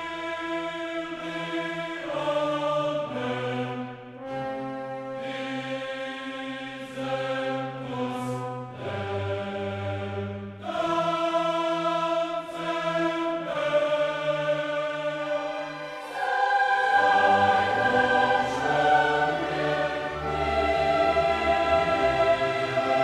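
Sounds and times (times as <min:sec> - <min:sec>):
choir singing sustained chords: 0:00.0 - 0:23.0
orchestral accompaniment: 0:15.0 - 0:23.0.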